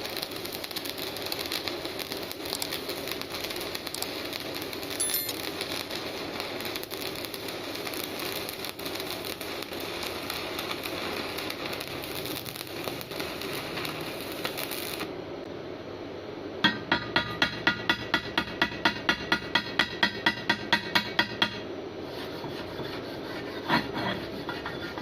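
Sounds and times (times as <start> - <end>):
welding arc crackling: 0.0 - 15.1
ringing metal strikes: 5.0 - 5.4.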